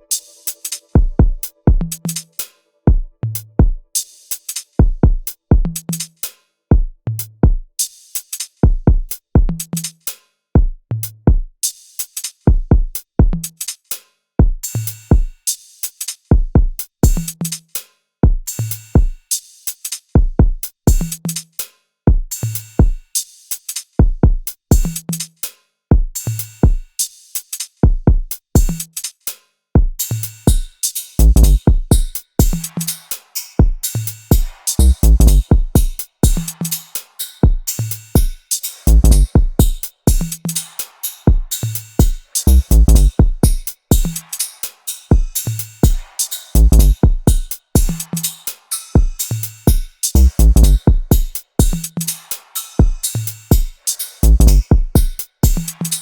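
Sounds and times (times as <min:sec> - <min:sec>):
electronic drum-machine beat: 0:00.0 - 0:06.0, 0:20.3 - 0:21.2, 0:29.8 - 0:56.0.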